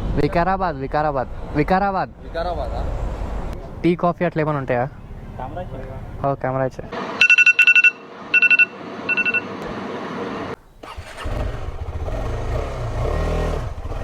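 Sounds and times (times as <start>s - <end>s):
short high electronic beeps: 7.2s - 9.6s
motorcycle engine running: 10.8s - 14.0s.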